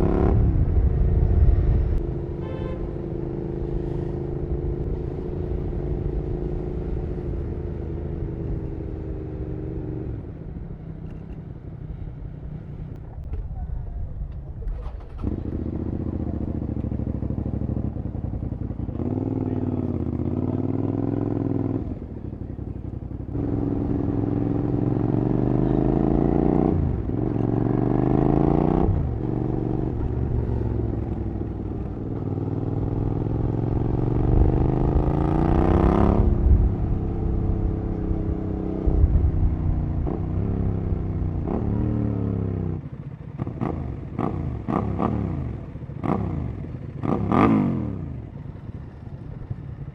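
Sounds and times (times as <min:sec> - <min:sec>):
motorcycle engine revving through gears: 0:00.0 - 0:00.9, 0:23.2 - 0:49.1
wind and road rumble: 0:00.0 - 0:49.9.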